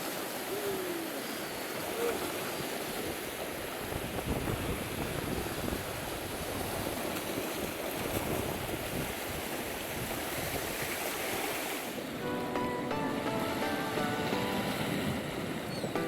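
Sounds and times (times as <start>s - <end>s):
sea surf washing against rocks: 0.0s - 16.0s
wind rumbling on microphone: 2.8s - 11.5s.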